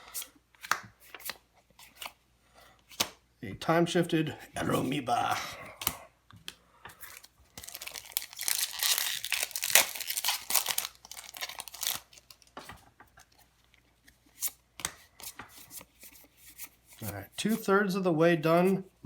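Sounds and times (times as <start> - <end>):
wrapper crinkling: 7.0 - 12.6
foil wrapper tearing: 7.1 - 12.5.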